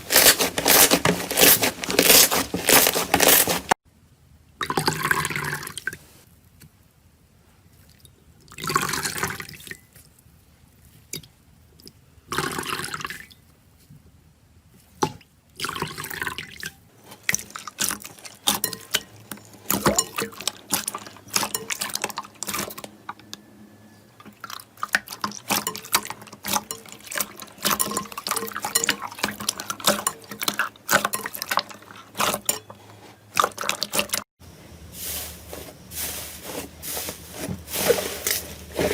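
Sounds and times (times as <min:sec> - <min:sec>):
slime squelching: 0:00.0 - 0:03.8.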